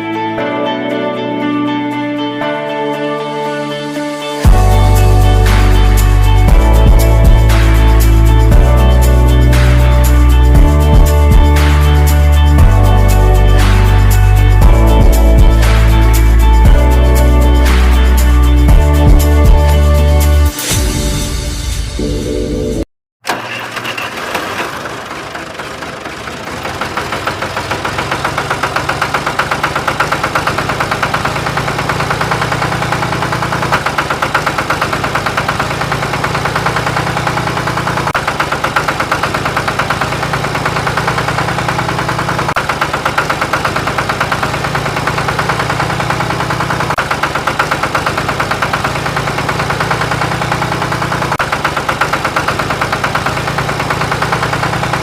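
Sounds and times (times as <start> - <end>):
small motor machine rattling: 23.2 - 55.0.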